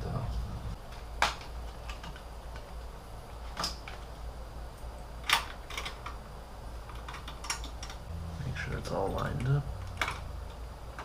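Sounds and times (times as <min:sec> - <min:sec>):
hard parts clicking and knocking: 0:05.2 - 0:06.2, 0:09.2 - 0:11.0.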